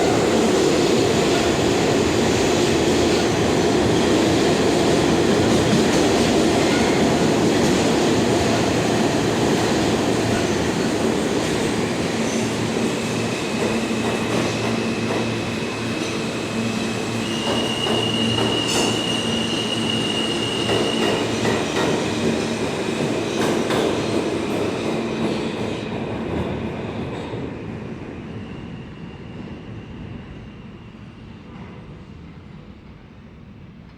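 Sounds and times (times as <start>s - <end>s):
train wheels rumbling and clicking: 0.1s - 16.3s, 17.2s - 19.1s, 20.6s - 27.5s
high wheel squeal: 17.1s - 21.3s.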